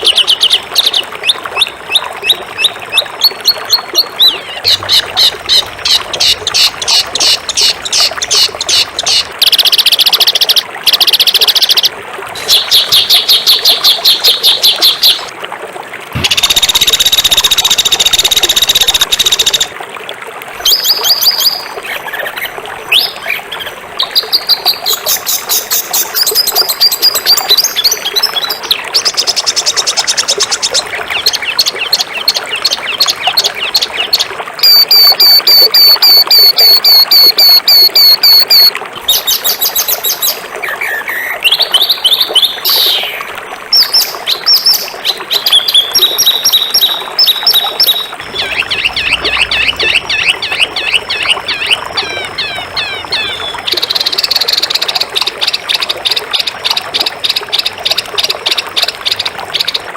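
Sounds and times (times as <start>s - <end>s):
songbirds chirping: 44.8s - 53.8s
buzzy bird trills: 46.7s - 54.7s.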